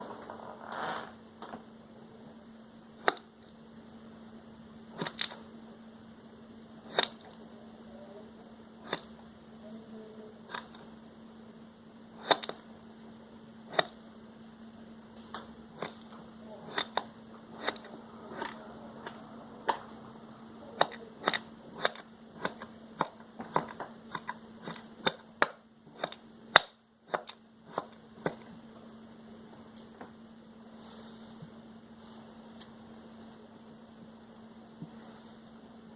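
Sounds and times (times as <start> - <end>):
faint steady hum: 0.0 - 35.9
knife cutting kinetic sand: 3.0 - 3.3, 4.9 - 5.4, 6.8 - 7.4, 8.8 - 9.2, 10.5 - 10.8, 12.2 - 12.6, 13.7 - 14.0, 15.8 - 18.6, 20.8 - 26.2.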